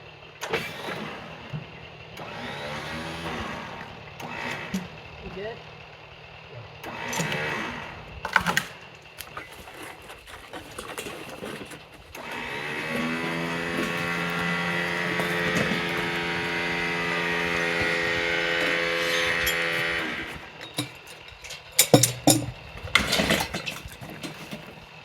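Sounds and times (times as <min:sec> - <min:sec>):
chainsaw running at full speed: 0:02.2 - 0:08.9, 0:12.1 - 0:21.6.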